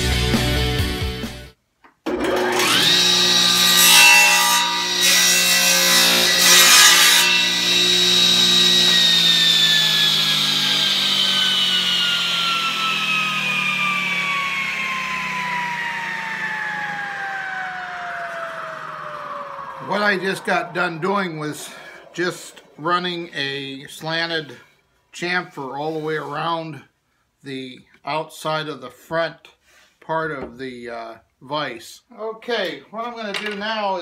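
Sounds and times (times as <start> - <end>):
power tool cutting wood: 2.1 - 24.6
power tool motor whine: 7.4 - 22.9.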